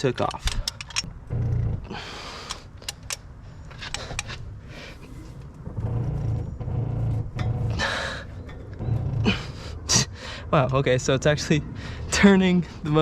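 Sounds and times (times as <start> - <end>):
metal clicks and clinks: 0.2 - 1.1
low thuds: 3.8 - 10.6.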